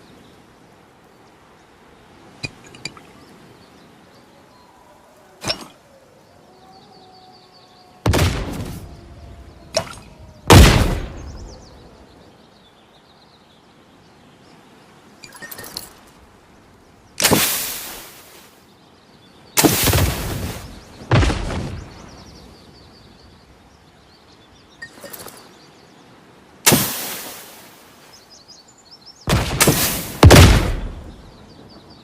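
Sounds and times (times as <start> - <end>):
faint birdsong chirps: 0.0 - 32.0
explosion blasts: 8.1 - 9.0, 10.5 - 11.6, 19.6 - 22.1, 29.3 - 31.3.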